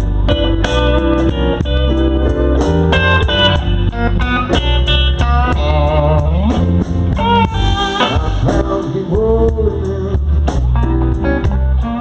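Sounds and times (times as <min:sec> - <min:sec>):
blues band playing: 0:00.0 - 0:12.0
electric guitar lead with bent notes: 0:00.0 - 0:12.0.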